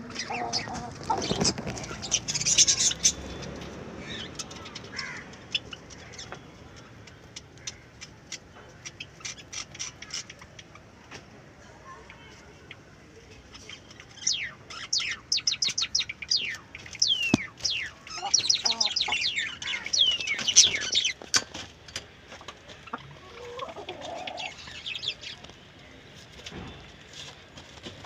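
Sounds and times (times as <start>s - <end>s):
chicks peeping: 0.0s - 6.4s, 13.6s - 21.7s, 22.3s - 25.5s.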